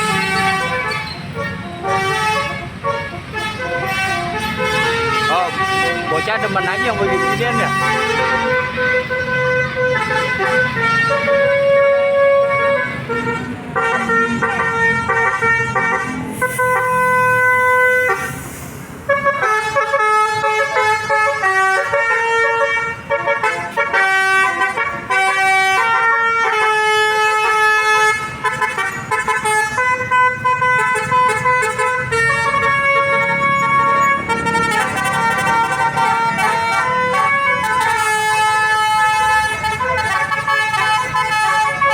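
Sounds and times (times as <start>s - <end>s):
musical bus air horns: 0.0s - 41.9s
air hiss: 18.1s - 19.0s.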